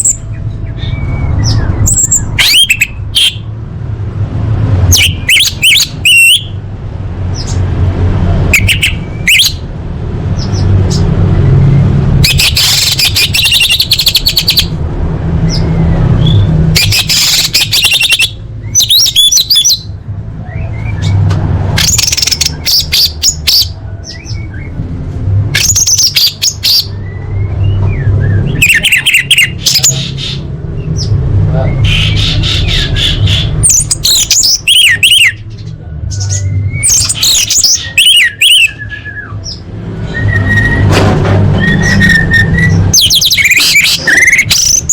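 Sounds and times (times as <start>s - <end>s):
thrush singing whistled phrases: 4.9s - 6.6s, 8.5s - 9.6s, 12.2s - 14.7s, 15.5s - 21.2s, 31.6s - 35.4s, 36.3s - 40.9s, 41.6s - 44.9s.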